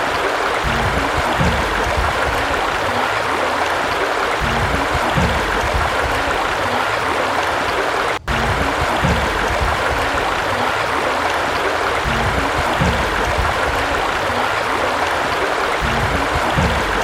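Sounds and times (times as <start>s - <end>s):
running water rushing: 0.0s - 17.0s.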